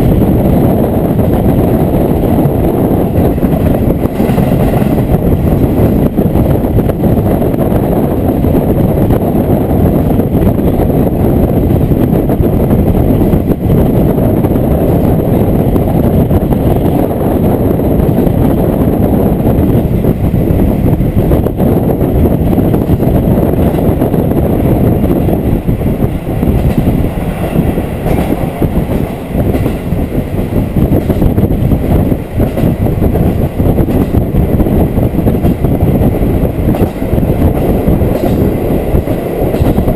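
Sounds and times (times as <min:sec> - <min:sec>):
train rumbling on rails: 0:00.0 - 0:39.9.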